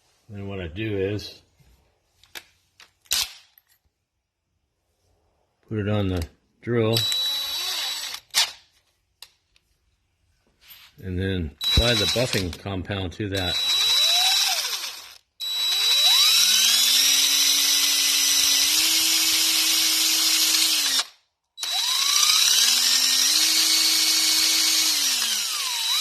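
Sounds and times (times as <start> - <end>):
electric drill motor whine: 7.0 - 8.4, 11.6 - 12.4, 13.5 - 26.0.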